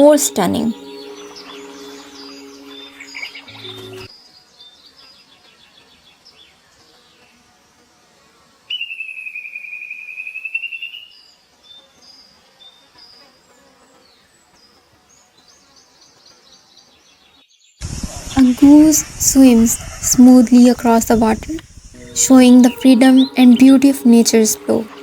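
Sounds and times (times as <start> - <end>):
birds chirping faintly: 0.0 - 7.9, 8.7 - 25.0
loud buzzing trill: 0.7 - 4.1.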